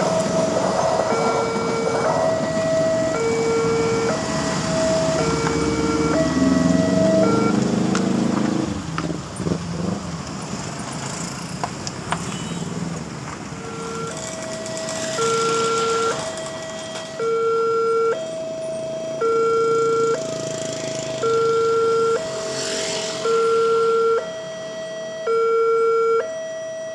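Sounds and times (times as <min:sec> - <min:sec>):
level-crossing alarm tones: 0:00.0 - 0:08.8, 0:13.5 - 0:26.9
loud low droning: 0:00.0 - 0:09.2.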